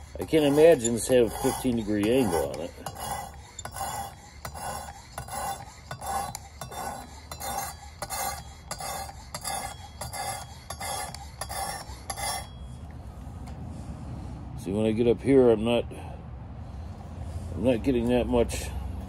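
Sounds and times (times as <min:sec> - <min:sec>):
sharpening stone rasping on knife: 0:00.0 - 0:12.6.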